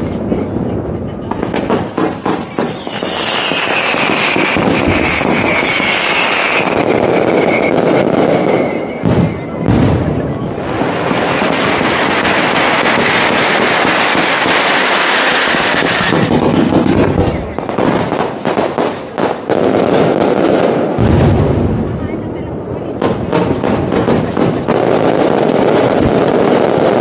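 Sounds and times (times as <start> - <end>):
fireworks crackling and banging: 0.0 - 27.0
heavy firework booms: 0.0 - 27.0
falling firework whistles: 1.4 - 10.1, 12.6 - 18.1.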